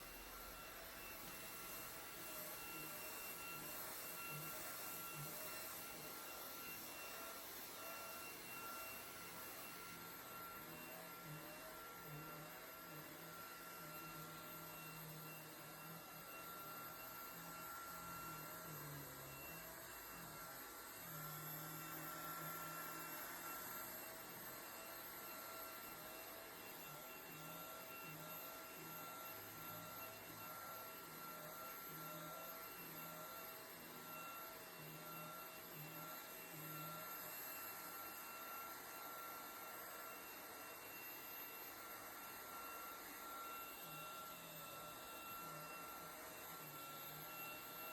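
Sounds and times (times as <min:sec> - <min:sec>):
vacuum cleaner running: 0:00.0 - 0:47.9.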